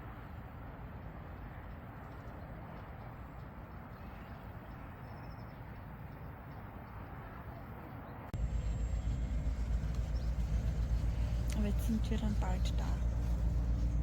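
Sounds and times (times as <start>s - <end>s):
faint bird chirp: 2.1s - 13.1s
low outdoor rumble: 8.3s - 14.0s
road rumble inside moving car: 8.3s - 14.0s.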